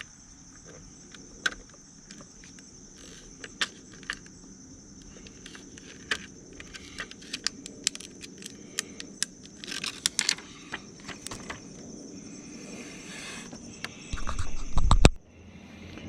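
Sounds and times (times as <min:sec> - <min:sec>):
high insect trill: 0:00.0 - 0:16.0
clicks and rustles of handling parts: 0:00.5 - 0:04.4, 0:05.0 - 0:11.8.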